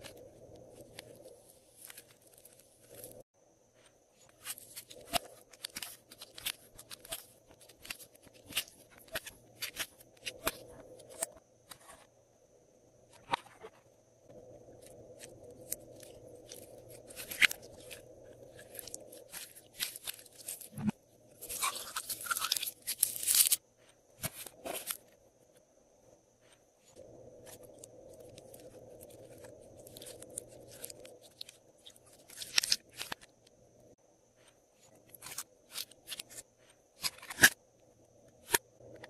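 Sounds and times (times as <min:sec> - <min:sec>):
slime squishing with crackles: 0:14.7 - 0:25.0, 0:26.4 - 0:33.4.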